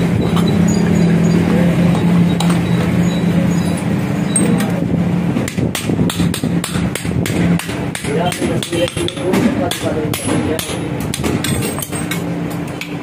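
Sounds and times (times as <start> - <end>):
steady low hum: 0.0 - 13.0
hammer striking anvil: 5.5 - 12.2.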